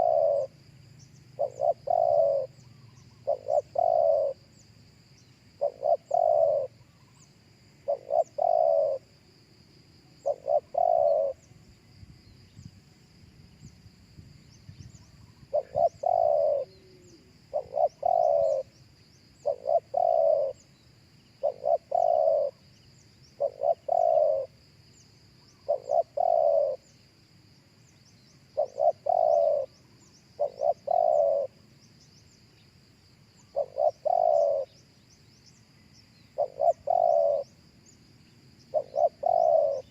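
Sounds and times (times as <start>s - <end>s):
dove cooing: 0.0s - 0.6s, 1.4s - 4.6s, 5.6s - 7.2s, 7.8s - 9.1s, 10.2s - 11.5s, 15.2s - 18.8s, 19.4s - 20.7s, 21.4s - 22.6s, 23.4s - 24.6s, 25.5s - 26.9s, 28.6s - 29.8s, 30.4s - 31.7s, 33.4s - 34.8s, 36.3s - 37.6s, 38.7s - 39.9s.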